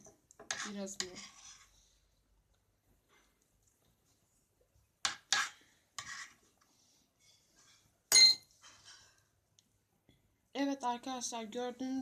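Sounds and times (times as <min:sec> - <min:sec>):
spoon knocking and scraping bowl: 0:00.0 - 0:01.7, 0:05.0 - 0:06.4, 0:08.1 - 0:08.9.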